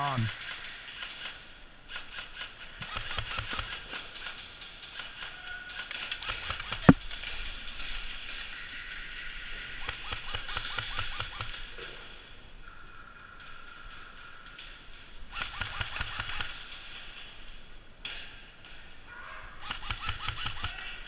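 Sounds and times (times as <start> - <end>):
airsoft gunfire: 0.4 - 5.2, 9.8 - 11.7, 15.3 - 16.8, 19.6 - 21.0.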